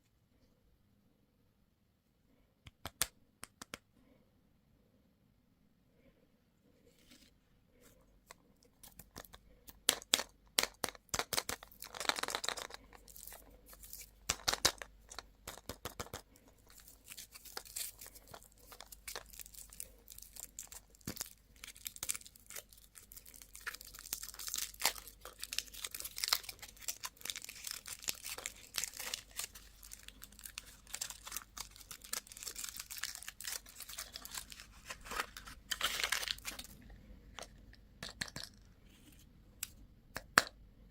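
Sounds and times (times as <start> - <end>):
wrappers crinkling and tearing: 16.7 - 36.7.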